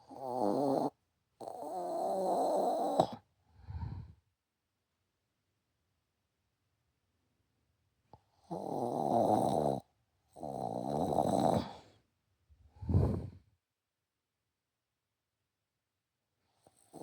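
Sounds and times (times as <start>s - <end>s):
woman snoring: 0.0s - 4.1s, 8.4s - 9.8s, 10.4s - 11.8s.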